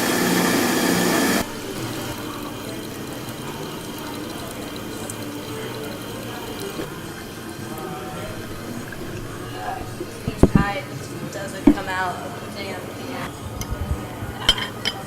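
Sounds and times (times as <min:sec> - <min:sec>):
loud steady mechanical noise: 0:00.0 - 0:10.8.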